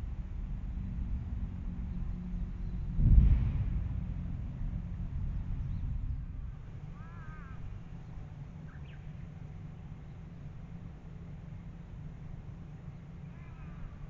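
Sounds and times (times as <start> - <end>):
low rumble: 0.0 - 10.9
bird calls: 8.6 - 9.3
faint bird chirps: 8.6 - 9.3.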